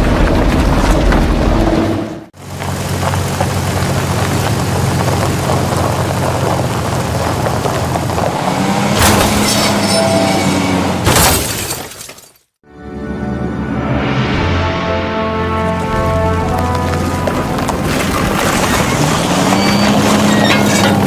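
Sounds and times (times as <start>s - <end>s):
vehicle engine running: 0.0s - 11.0s, 15.4s - 21.0s.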